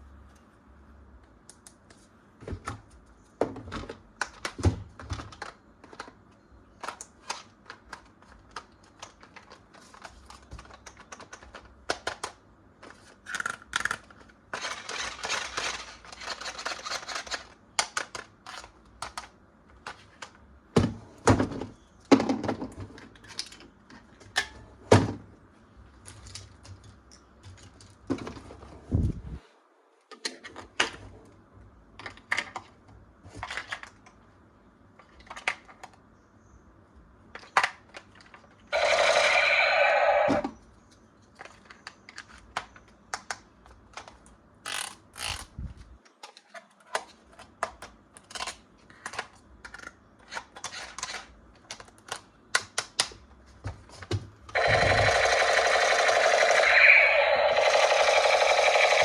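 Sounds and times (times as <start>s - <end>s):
clicks and taps of plastic toys: 40.4s - 45.4s, 47.0s - 54.3s.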